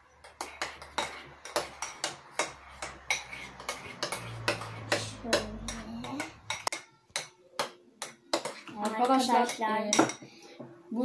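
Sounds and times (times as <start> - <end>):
utensil scraping against a bowl: 0.2 - 6.7.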